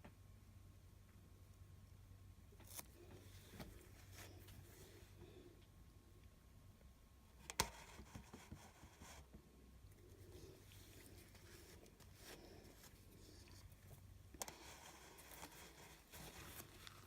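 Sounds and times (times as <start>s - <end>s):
low steady hum: 0.0s - 17.0s
faint soft rustles: 2.6s - 5.8s, 7.7s - 17.0s.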